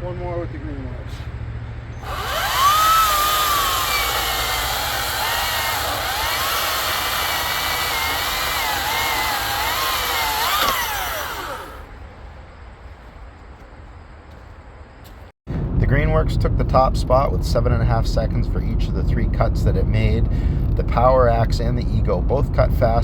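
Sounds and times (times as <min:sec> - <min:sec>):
chainsaw motor whine cutting wood: 0:02.0 - 0:11.9.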